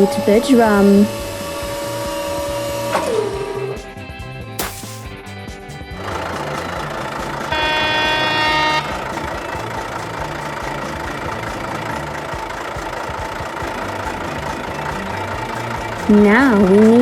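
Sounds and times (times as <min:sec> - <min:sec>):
truck engine idling: 0:04.5 - 0:17.0
truck horn toot: 0:07.5 - 0:09.1.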